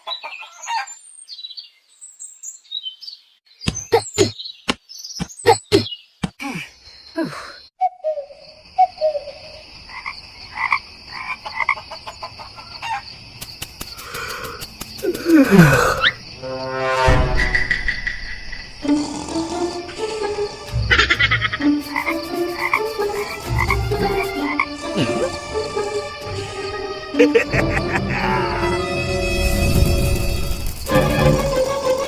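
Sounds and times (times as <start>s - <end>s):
frogs croaking: 8.2s - 16.7s, 17.5s - 29.1s
high insect-like tone: 12.5s - 27.0s, 28.6s - 32.0s.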